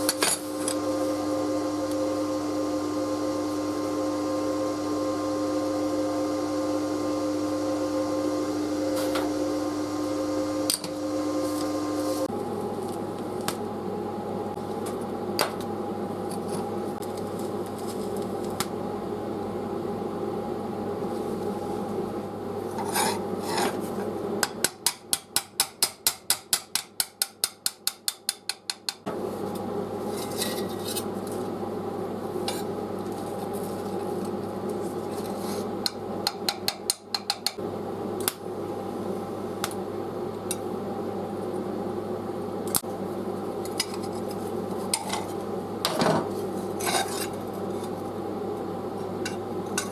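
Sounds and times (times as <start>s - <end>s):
steady mechanical hum: 0.0s - 49.9s.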